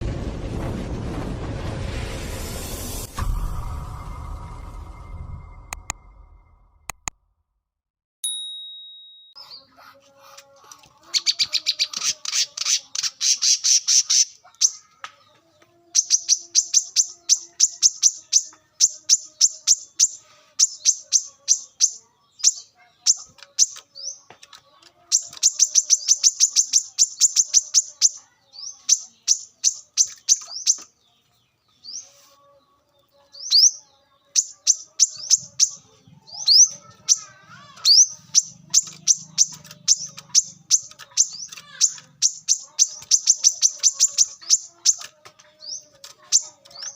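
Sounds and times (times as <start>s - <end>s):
bird singing sharp chirps: 15.9s - 24.2s, 25.1s - 31.1s, 33.3s - 46.9s.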